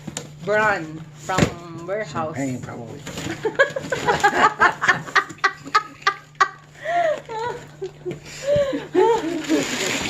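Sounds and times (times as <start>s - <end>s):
person cackling laughter: 3.4s - 10.0s.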